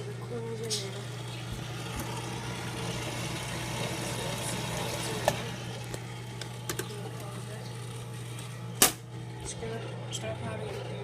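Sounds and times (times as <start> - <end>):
popcorn machine humming: 0.0 - 11.0.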